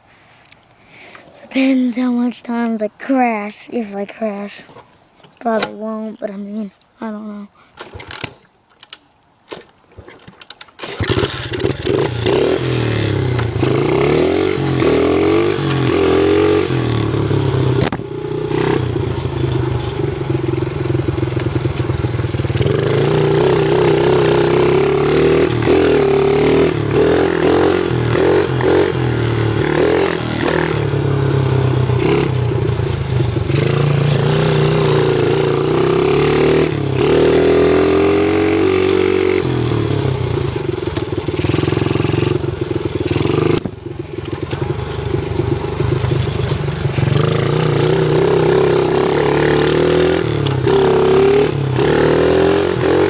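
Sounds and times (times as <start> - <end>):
dirt bike engine revving: 10.8 - 53.0.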